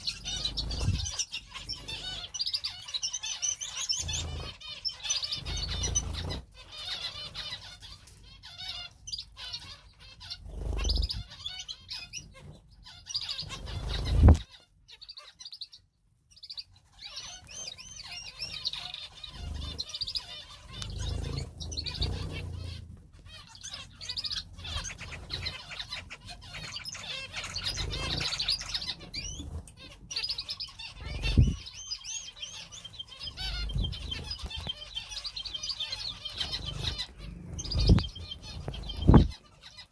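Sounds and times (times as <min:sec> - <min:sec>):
wings fluttering: 0:00.0 - 0:02.9, 0:03.6 - 0:07.5, 0:10.2 - 0:12.6, 0:13.2 - 0:14.5, 0:18.5 - 0:31.7, 0:32.5 - 0:39.5
cage birds chirping: 0:00.0 - 0:39.9.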